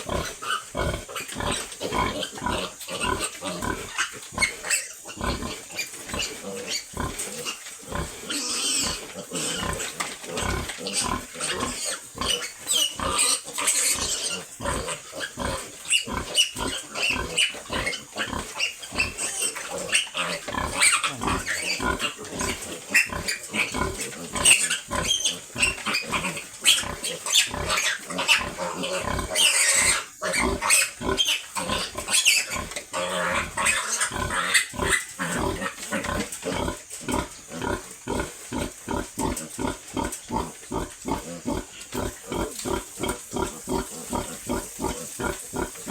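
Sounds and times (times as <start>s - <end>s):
pigs grunting: 0.0s - 45.9s
piglets squealing: 10.4s - 36.7s.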